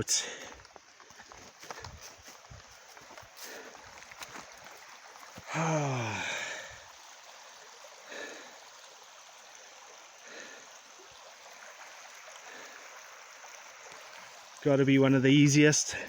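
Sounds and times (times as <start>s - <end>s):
small stream running: 0.0s - 16.0s
man sighing: 5.4s - 6.8s.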